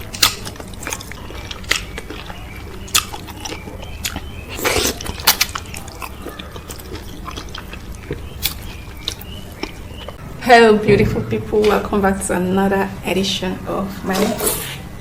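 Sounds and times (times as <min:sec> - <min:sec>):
eating bites: 0:00.0 - 0:10.2.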